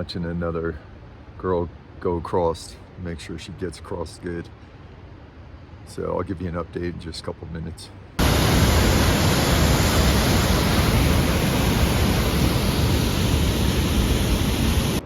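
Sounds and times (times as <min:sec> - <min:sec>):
fast river rushing: 0:08.2 - 0:15.0.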